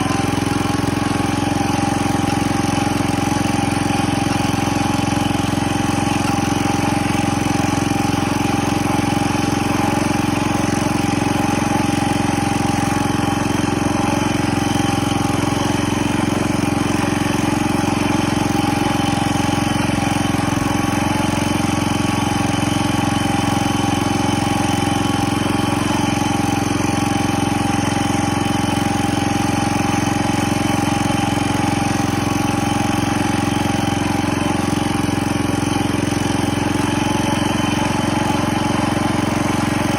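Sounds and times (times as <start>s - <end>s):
garden tractor engine running: 0.0s - 39.9s.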